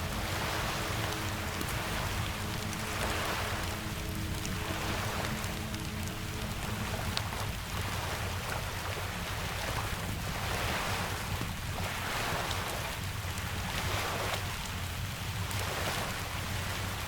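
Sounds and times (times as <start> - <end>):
deep low rumble: 0.0 - 9.0
faint fire crackles: 0.0 - 17.0
steady rain: 0.0 - 17.0.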